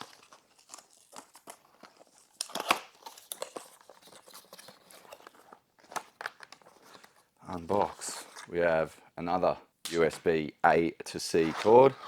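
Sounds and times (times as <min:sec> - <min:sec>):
packaging crinkling and rustling: 0:00.0 - 0:08.5.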